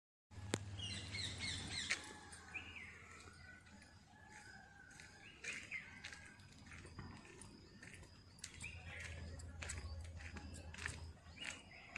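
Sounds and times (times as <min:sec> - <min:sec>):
birds chirping and calling: 0:00.5 - 0:11.9.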